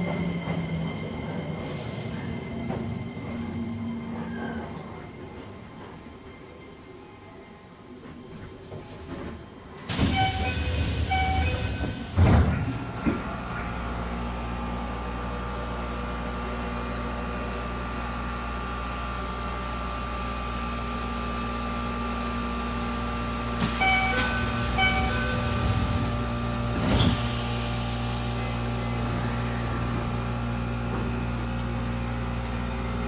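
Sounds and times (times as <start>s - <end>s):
train electrical hum: 0.0s - 33.0s
sliding doors thudding: 9.3s - 13.5s.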